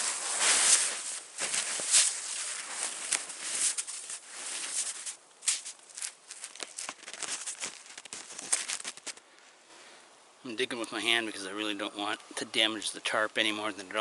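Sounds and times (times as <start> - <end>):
snow crunching and swishing: 0.0 - 9.2.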